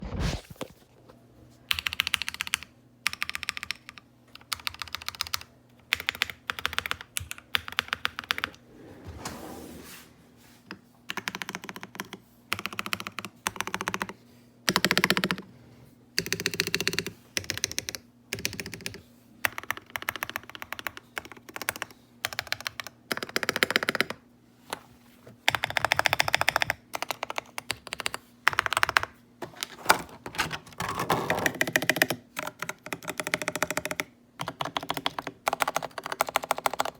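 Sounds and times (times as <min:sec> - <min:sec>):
keyboard typing: 0:01.7 - 0:08.6, 0:11.1 - 0:15.5, 0:16.2 - 0:24.2, 0:25.5 - 0:29.1, 0:30.9 - 0:36.9.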